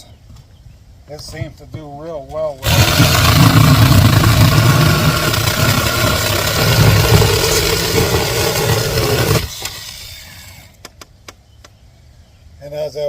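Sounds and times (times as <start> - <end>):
chainsaw cutting branch: 2.6 - 10.6.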